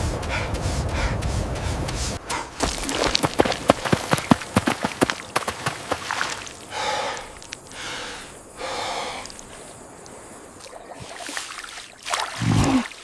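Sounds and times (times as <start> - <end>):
heavy breathy snorts: 6.7 - 9.4.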